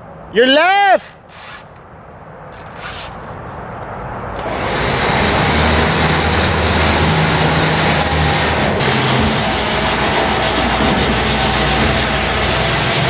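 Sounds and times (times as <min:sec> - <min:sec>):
electric winch whirring: 0:04.4 - 0:13.0.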